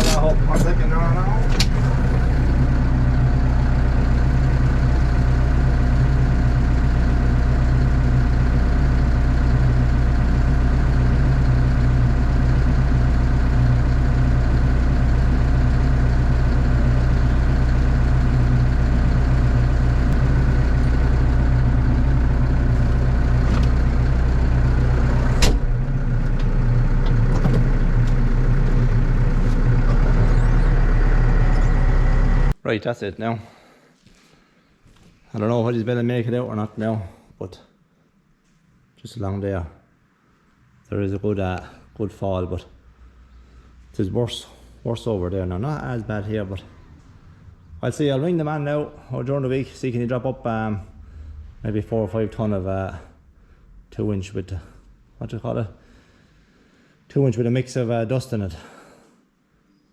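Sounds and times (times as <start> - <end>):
diesel engine running under load: 0.0 - 32.6, 44.5 - 53.6.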